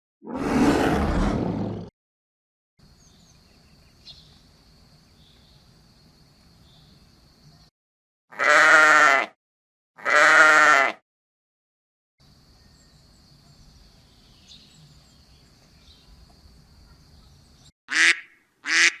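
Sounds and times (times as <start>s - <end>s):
sheep bleating: 8.3s - 9.4s, 10.0s - 11.0s.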